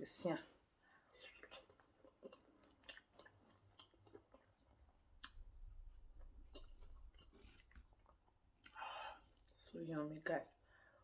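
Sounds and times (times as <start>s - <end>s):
wet chewing: 1.2s - 8.8s.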